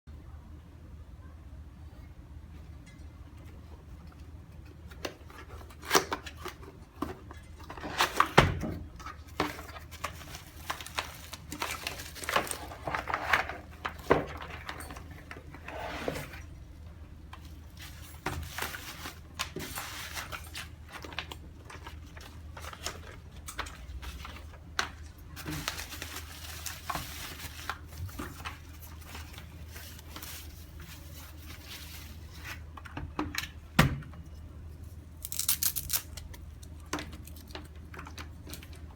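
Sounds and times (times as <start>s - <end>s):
packaging rustling: 9.0s - 15.6s, 17.3s - 32.8s.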